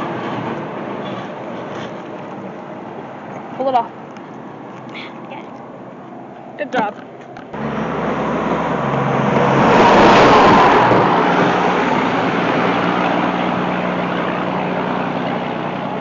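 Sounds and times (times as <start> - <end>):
motor vehicle passing by: 7.4 - 16.0.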